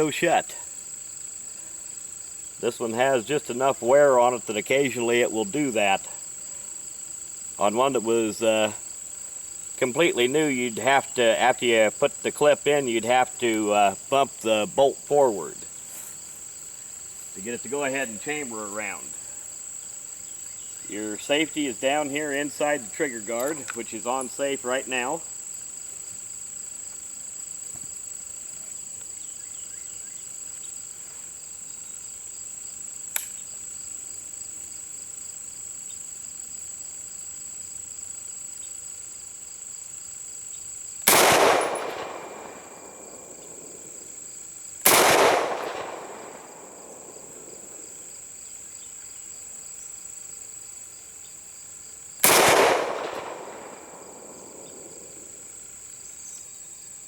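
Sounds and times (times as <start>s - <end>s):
crickets chirring: 0.0s - 57.0s
rifle shots echoing: 41.1s - 44.1s, 44.8s - 48.1s, 52.2s - 55.4s.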